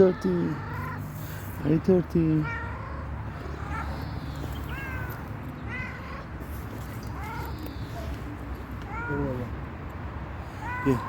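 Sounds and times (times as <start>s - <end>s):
cat meowing: 2.3s - 6.4s, 8.8s - 9.5s, 10.5s - 11.0s.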